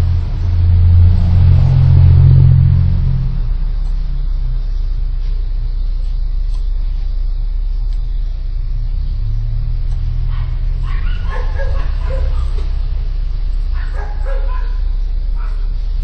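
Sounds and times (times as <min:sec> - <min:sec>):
low rumble: 0:00.0 - 0:16.0
dog barking and yipping: 0:10.2 - 0:13.0, 0:13.6 - 0:15.8.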